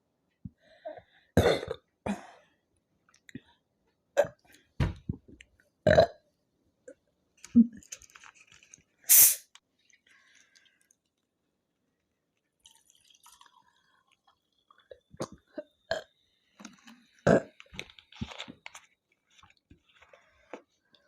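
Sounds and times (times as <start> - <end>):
person gulping a drink: 5.1 - 6.2, 12.6 - 18.8.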